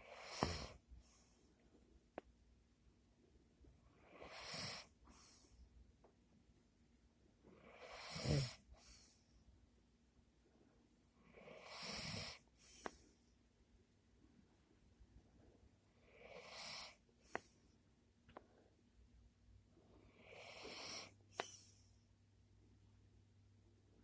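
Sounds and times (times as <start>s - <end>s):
man breathing noisily in sleep: 0.0s - 1.6s, 7.6s - 9.3s.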